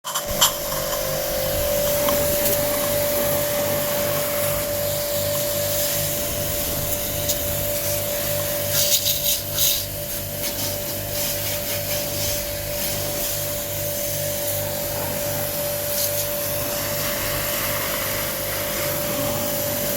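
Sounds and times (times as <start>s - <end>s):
pressure washer running: 0.0s - 19.9s.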